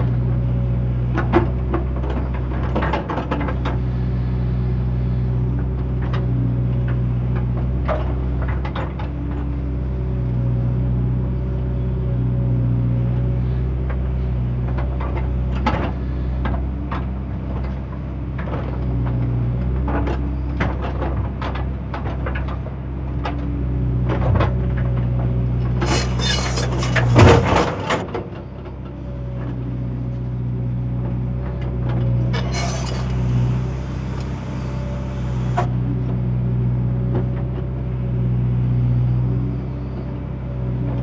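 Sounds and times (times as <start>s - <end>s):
excavator diesel engine running: 21.0s - 37.9s
knocks and clanks: 25.6s - 28.2s.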